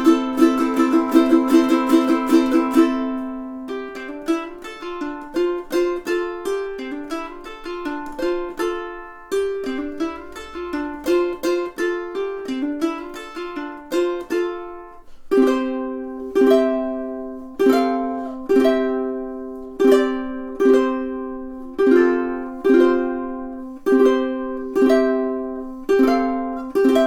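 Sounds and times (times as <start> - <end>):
ukulele picking and strumming: 0.0 - 27.0.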